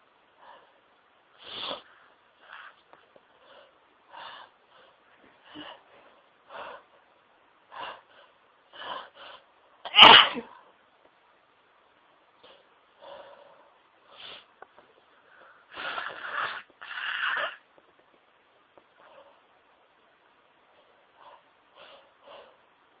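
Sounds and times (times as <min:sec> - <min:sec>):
person sneezing: 0:09.9 - 0:10.6.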